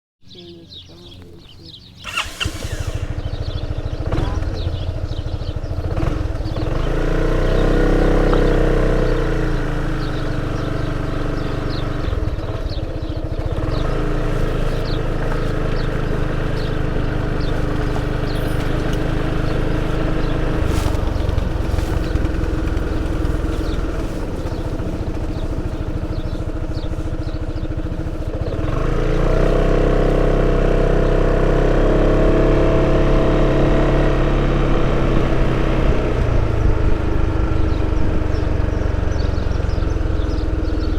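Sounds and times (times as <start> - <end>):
road noise: 0.2 - 40.9
scooter engine running: 0.3 - 40.9
wind noise: 18.0 - 27.1.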